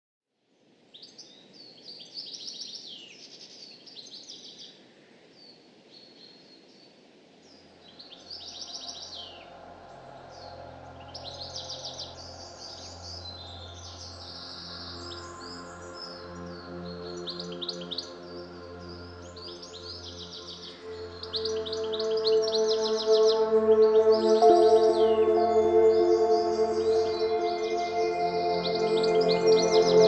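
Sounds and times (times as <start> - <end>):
songbirds chirping and trilling: 1.0 - 30.0
soft sustained background music: 7.8 - 30.0.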